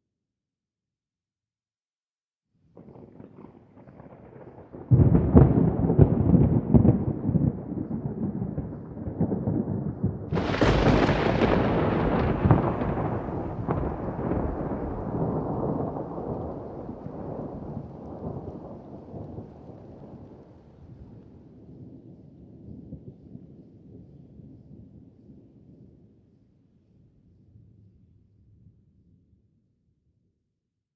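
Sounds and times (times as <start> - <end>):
thunder rumbling and cracking: 2.8 - 23.2.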